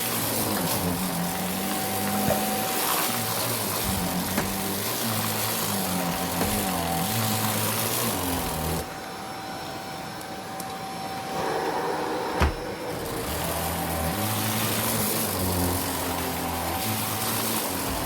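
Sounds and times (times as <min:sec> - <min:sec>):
vacuum cleaner whining: 0:00.0 - 0:18.0
rushing air: 0:11.2 - 0:13.4.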